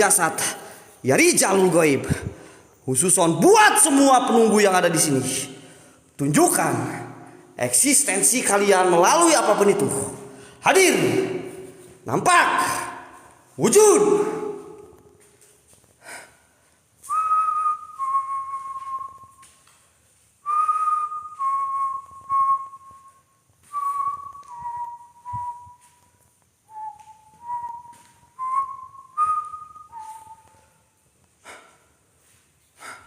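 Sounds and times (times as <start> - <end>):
person whistling a slow tune: 17.0 - 19.7, 20.4 - 31.0.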